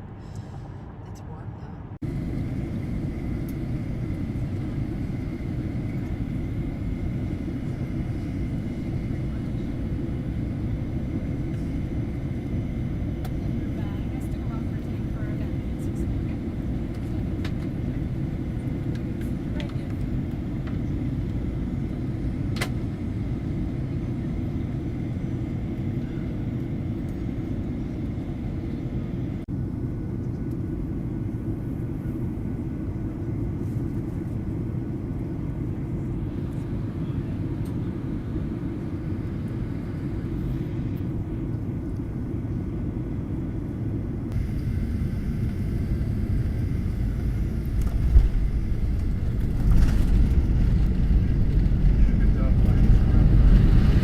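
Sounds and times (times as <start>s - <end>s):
vehicle interior rumble: 44.3s - 54.0s.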